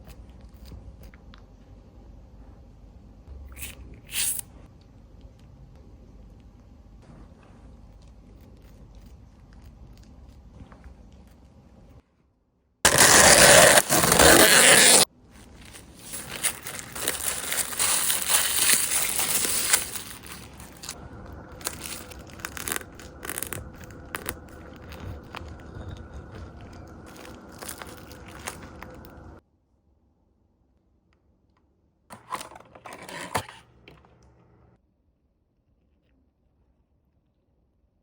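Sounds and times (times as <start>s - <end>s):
crackling and scraping: 12.9s - 29.4s.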